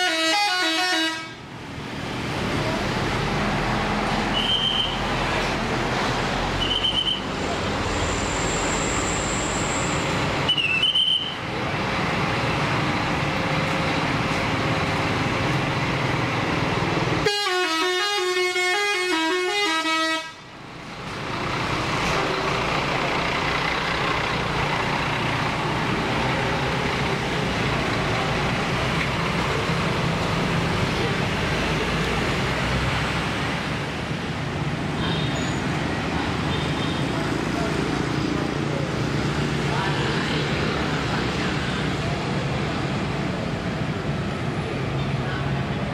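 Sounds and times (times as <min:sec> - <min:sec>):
bus horn playing a tune: 0:00.0 - 0:01.4, 0:17.2 - 0:20.5
engine and traffic noise: 0:00.0 - 0:45.9.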